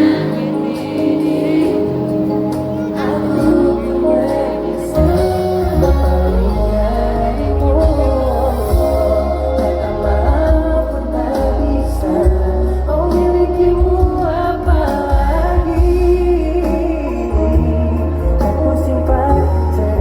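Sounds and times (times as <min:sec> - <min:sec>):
live band playing pop ballad: 0:00.0 - 0:20.0
voices singing: 0:00.0 - 0:20.0
steady low bass: 0:04.6 - 0:20.0.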